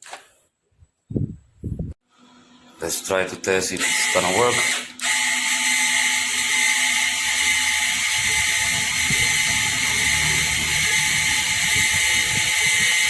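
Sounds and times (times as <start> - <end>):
welder wire feed motor running: 3.8 - 13.0.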